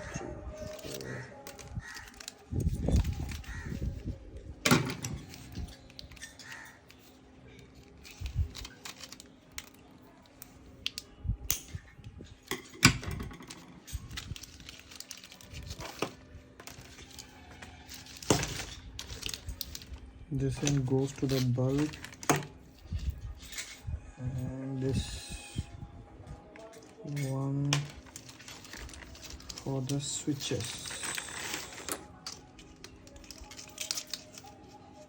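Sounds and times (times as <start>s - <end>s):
plastic connectors clicking and knocking: 0.6s - 4.0s, 8.0s - 11.8s, 12.4s - 23.8s.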